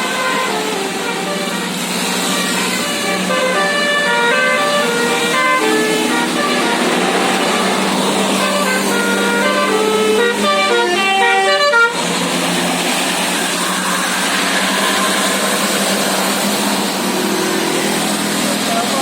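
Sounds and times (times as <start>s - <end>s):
musical air horn tune: 0.0s - 12.1s
vehicle noise with low hum: 0.0s - 19.0s.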